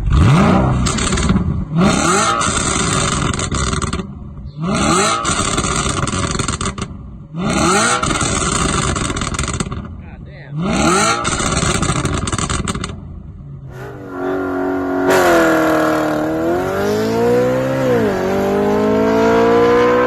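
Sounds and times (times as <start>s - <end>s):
car engine revving: 0.0s - 20.0s
exhaust crackling pops: 2.4s - 4.5s, 5.2s - 7.0s, 8.0s - 10.2s, 11.2s - 13.1s.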